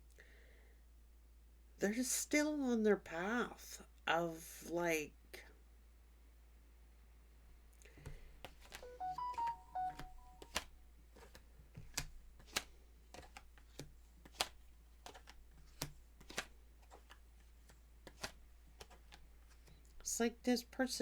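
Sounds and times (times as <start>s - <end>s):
short electronic beeps: 8.8s - 10.4s.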